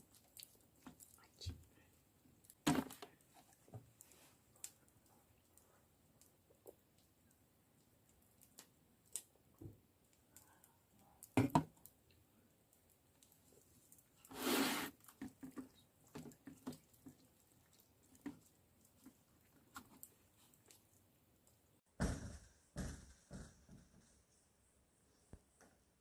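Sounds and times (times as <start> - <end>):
scraping or rustling: 14.2 - 15.7.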